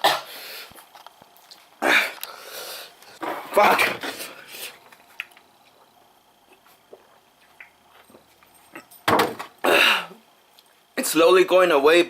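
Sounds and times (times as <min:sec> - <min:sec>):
person breathing: 0:01.8 - 0:03.2
wet mouth clicks: 0:07.4 - 0:07.8.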